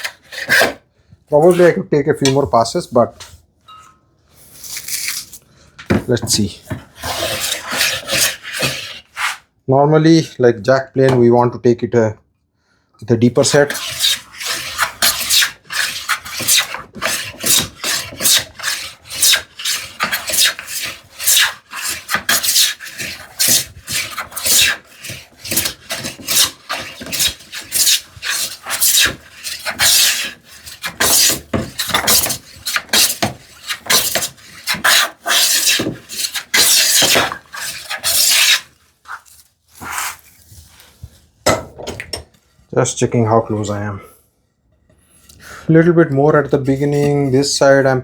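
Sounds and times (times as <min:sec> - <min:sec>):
hand plane rasping on wood: 0:06.8 - 0:09.4, 0:13.4 - 0:39.2.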